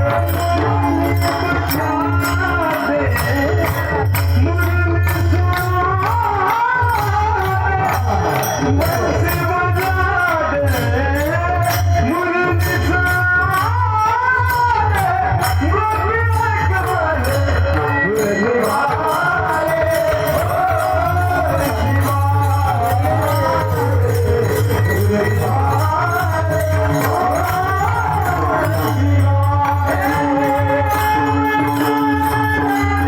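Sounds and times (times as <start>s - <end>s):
jingling hand percussion: 0.0s - 33.0s
man singing devotional song: 0.0s - 33.0s.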